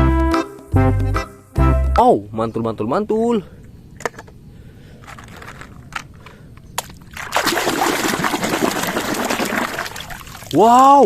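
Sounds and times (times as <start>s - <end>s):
water splashing and sloshing: 6.8s - 10.7s.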